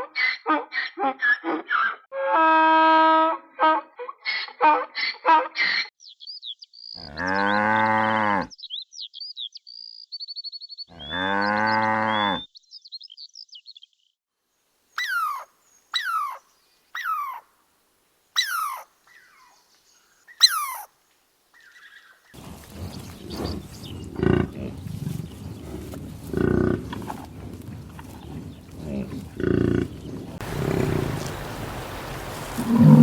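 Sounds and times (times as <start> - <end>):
small birds chirping: 6.0 - 14.2, 14.9 - 17.5, 18.3 - 33.0
cow mooing: 7.0 - 8.5, 10.9 - 12.4, 25.6 - 31.8, 32.4 - 33.0.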